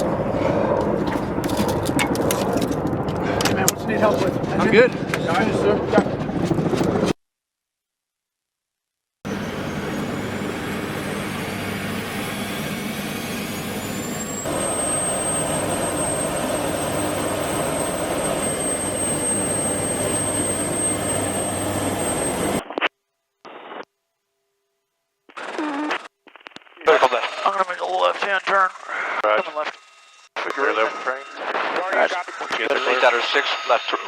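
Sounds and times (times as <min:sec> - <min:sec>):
helicopter engines and rotor: 0:00.0 - 0:07.1, 0:09.3 - 0:22.6
high whine: 0:09.3 - 0:22.8
intercom static bursts: 0:25.3 - 0:29.8, 0:30.4 - 0:34.0.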